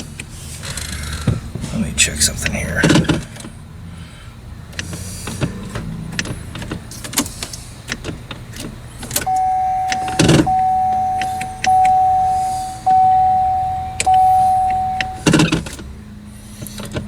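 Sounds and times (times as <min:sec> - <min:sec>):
electronic warning chime: 0:09.3 - 0:15.3.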